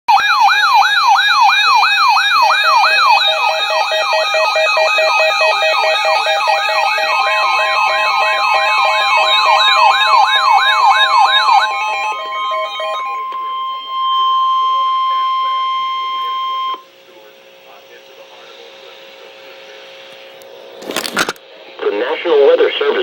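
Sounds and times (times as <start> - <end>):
electronic sirens sweeping: 0.1 - 19.9
pulsing beeps: 1.5 - 17.8
steady tone: 2.0 - 19.9.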